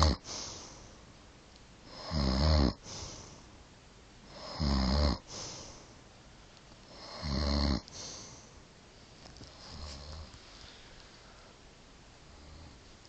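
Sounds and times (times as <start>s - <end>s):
woman snoring: 0.0s - 0.4s, 1.9s - 3.0s, 4.3s - 5.4s, 6.9s - 7.9s
soft breathy exhale: 7.9s - 8.6s.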